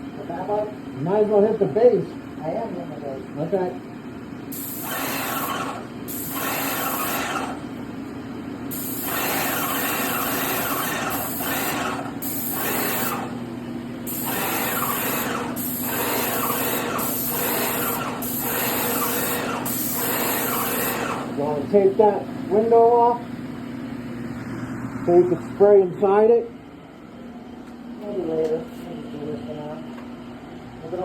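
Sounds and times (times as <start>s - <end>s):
spray gun hissing: 4.5s - 7.6s, 8.7s - 13.4s, 14.0s - 21.4s
pump humming: 4.6s - 7.8s, 8.7s - 21.4s.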